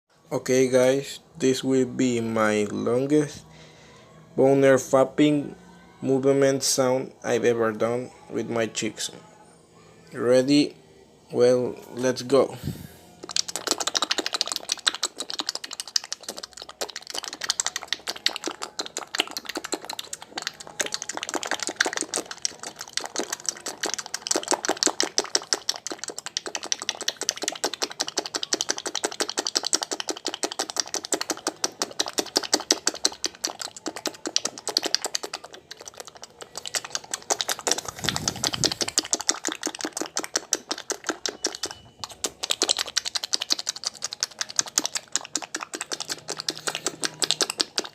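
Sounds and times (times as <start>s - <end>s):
wet mouth smacking: 12.6s - 47.9s.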